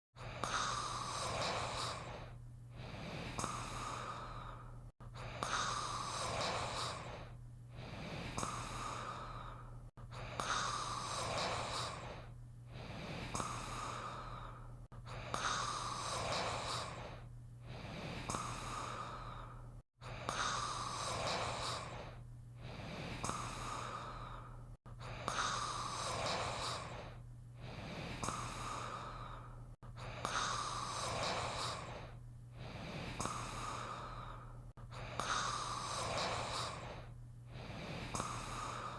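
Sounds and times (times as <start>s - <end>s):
steady low hum: 0.2s - 38.9s
cartoon character snoring: 5.4s - 9.1s, 10.4s - 14.0s, 30.2s - 33.8s, 35.2s - 38.9s.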